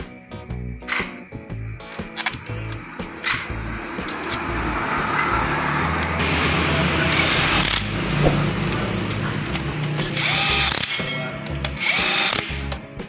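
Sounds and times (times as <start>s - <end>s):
background music: 0.0s - 13.0s
power tool spinning up: 2.2s - 12.8s.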